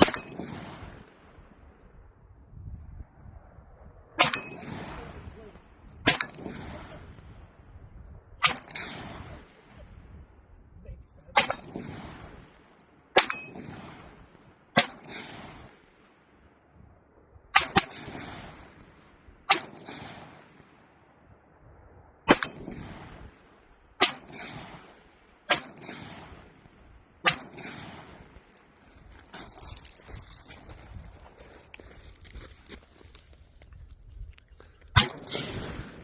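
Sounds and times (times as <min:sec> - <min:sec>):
gunshots with echo: 0:00.0 - 0:01.2, 0:04.2 - 0:07.2, 0:08.4 - 0:10.1, 0:11.3 - 0:15.8, 0:17.6 - 0:20.8, 0:24.0 - 0:28.4, 0:35.0 - 0:36.0.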